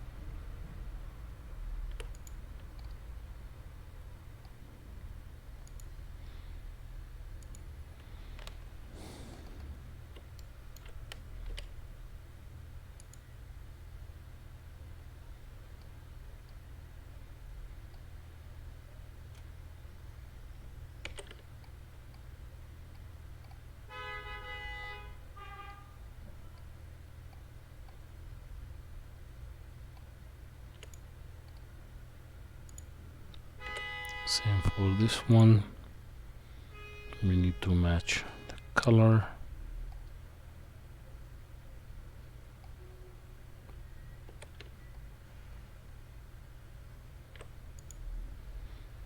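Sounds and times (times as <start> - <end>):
low steady hum: 0.0 - 49.0
computer mouse clicks: 1.9 - 3.0, 5.6 - 6.0, 7.4 - 11.8, 13.0 - 13.2, 21.0 - 22.3, 30.7 - 31.7, 32.6 - 34.2, 43.6 - 44.8, 47.3 - 48.1.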